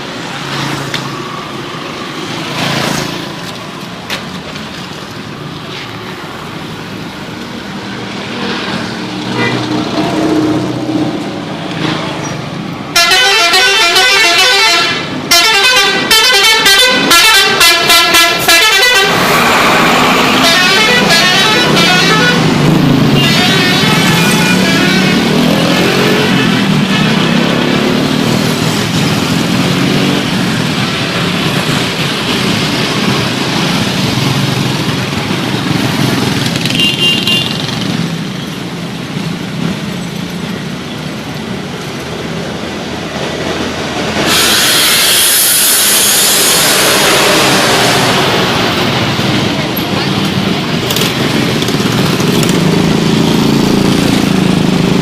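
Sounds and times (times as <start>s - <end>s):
vehicle engines passing: 0.0s - 55.0s
loud hiss: 44.0s - 49.0s.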